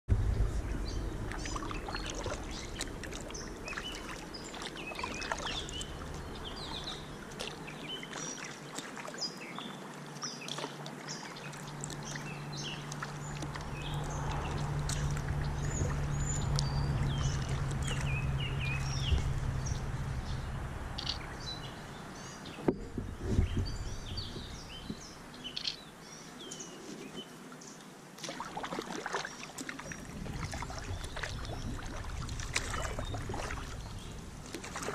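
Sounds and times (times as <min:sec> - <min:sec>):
low steady hum: 0:00.1 - 0:08.5, 0:11.1 - 0:26.1, 0:29.8 - 0:34.9
kayak paddling water: 0:00.1 - 0:34.9
birds chirping and singing: 0:00.3 - 0:08.4, 0:12.0 - 0:27.2.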